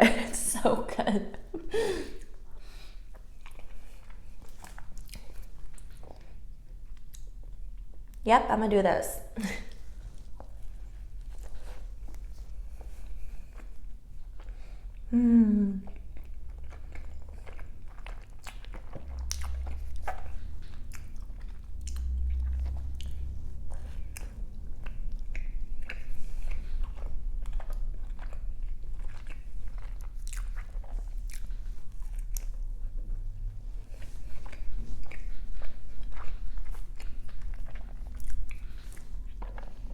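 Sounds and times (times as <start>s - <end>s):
biting and chewing crunchy food: 15.9s - 39.9s.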